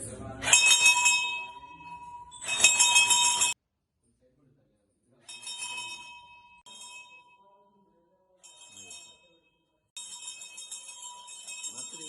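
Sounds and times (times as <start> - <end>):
temple bell ringing: 0.4 - 3.6, 5.3 - 7.7, 8.4 - 9.4, 10.0 - 12.0.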